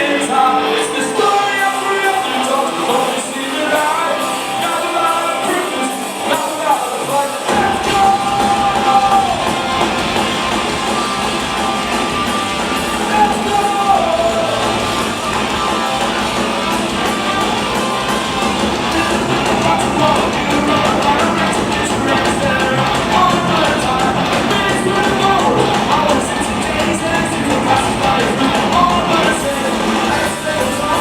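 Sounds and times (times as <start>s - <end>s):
person singing: 0.0s - 9.8s, 12.9s - 15.0s, 18.8s - 31.0s
electric guitar: 0.0s - 31.0s
punk rock band playing live: 0.0s - 31.0s.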